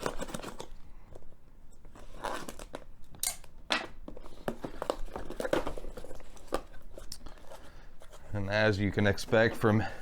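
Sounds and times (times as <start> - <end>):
cardboard rustling and scraping: 4.1 - 8.5.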